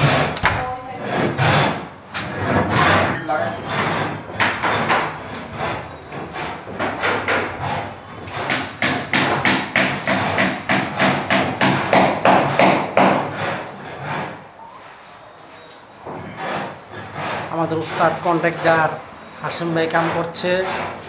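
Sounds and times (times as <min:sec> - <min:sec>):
rapid repeated knocks: 0:03.7 - 0:14.4.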